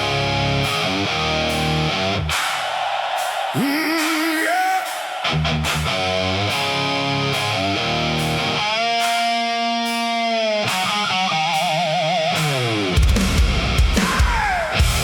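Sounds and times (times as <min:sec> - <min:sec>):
electric guitar solo: 0:05.4 - 0:13.0.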